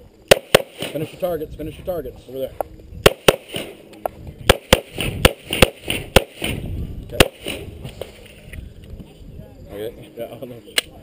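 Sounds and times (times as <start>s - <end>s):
pistol shots: 0.3s - 1.1s, 3.0s - 7.7s.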